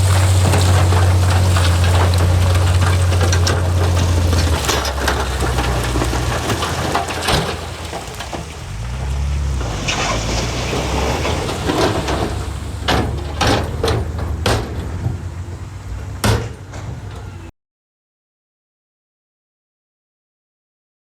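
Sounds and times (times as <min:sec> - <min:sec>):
sharp knocks and clanks: 0:00.0 - 0:09.7, 0:10.6 - 0:17.5
diesel engine running: 0:00.0 - 0:17.5.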